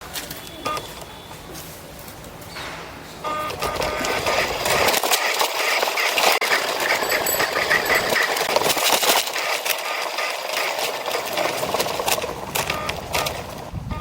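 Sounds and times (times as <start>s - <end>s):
toy car motor buzzing: 3.3s - 14.0s.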